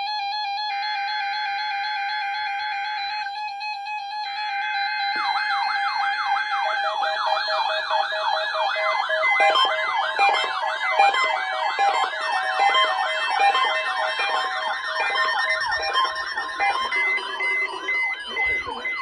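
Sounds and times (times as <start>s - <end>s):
electronic yelp sirens: 0.0s - 19.0s
held synthesizer notes: 5.1s - 19.0s.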